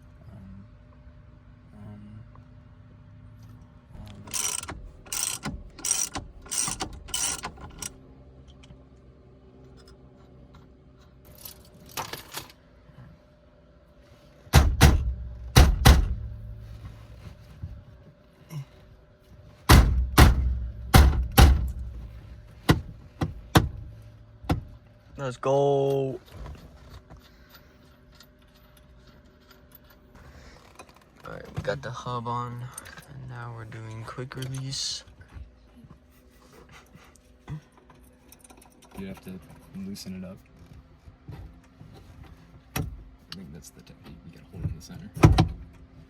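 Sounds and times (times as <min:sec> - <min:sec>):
sharp knocks on steering column: 0:14.5 - 0:16.4, 0:19.7 - 0:21.9, 0:22.6 - 0:24.8, 0:45.2 - 0:45.6
heavy booming thuds: 0:14.6 - 0:16.6, 0:19.7 - 0:24.8.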